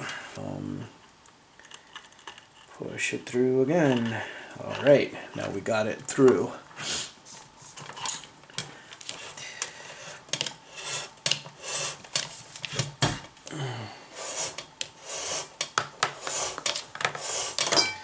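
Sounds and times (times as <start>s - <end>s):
cord rubbing and scraping: 3.6s - 5.9s, 7.2s - 13.1s, 14.1s - 17.8s
metal parts clinking: 17.6s - 18.0s.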